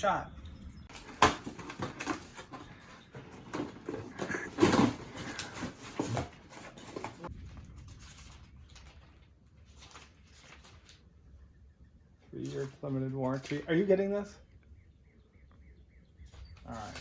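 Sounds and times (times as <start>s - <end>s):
handling knocks and clatters: 0.9s - 9.2s.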